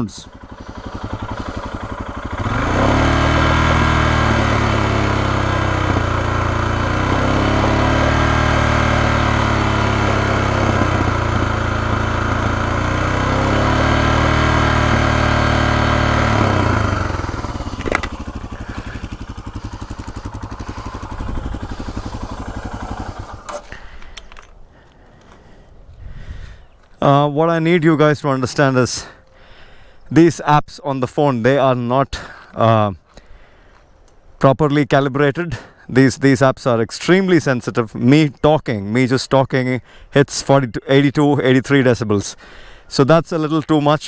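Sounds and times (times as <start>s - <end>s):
motorcycle engine revving: 0.0s - 24.5s.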